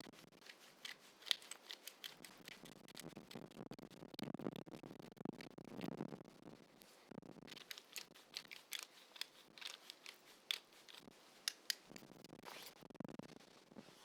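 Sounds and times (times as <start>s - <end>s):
pepper mill grinding: 0.3s - 3.3s, 7.5s - 12.1s.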